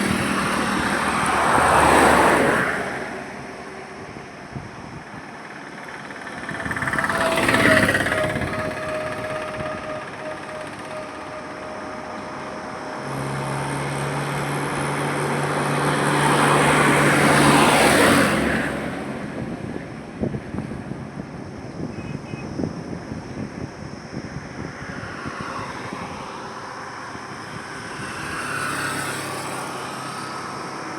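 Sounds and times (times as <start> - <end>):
vehicle rushing past: 0.0 - 20.4, 24.6 - 30.9
heavy vehicle engine hum: 0.0 - 30.9.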